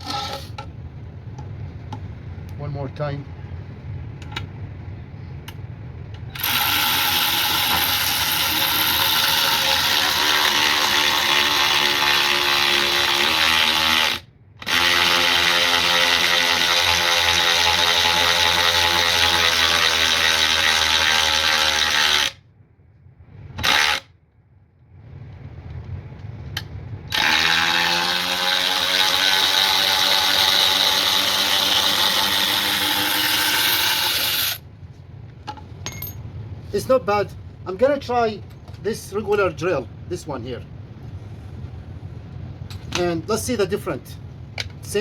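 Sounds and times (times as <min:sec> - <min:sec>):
cordless electric ratchet running: 0:06.4 - 0:22.4, 0:23.6 - 0:24.1, 0:27.1 - 0:34.6.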